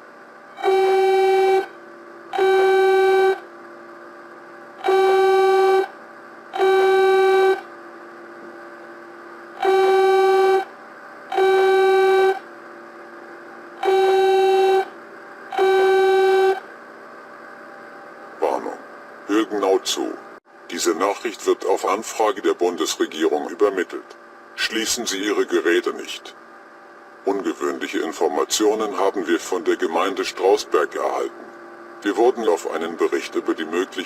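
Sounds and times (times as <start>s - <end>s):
low steady hum: 0.0s - 34.0s
buzzy electronic alert beeps: 11.3s - 12.4s, 13.8s - 14.9s.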